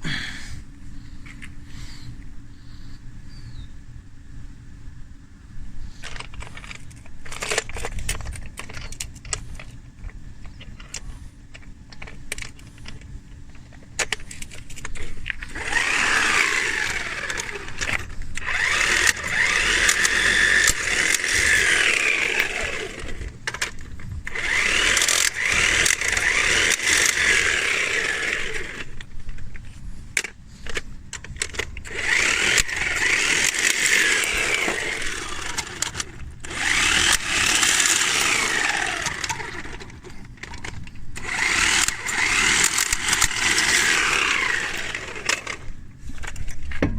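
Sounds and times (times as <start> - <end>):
power tool running: 15.4 - 29.1, 31.4 - 45.8.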